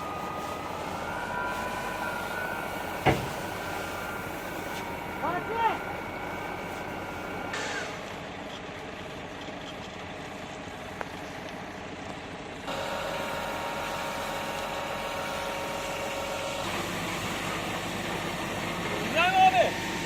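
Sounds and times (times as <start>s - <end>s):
steady whine: 0.0s - 9.2s
truck engine running: 0.0s - 20.0s.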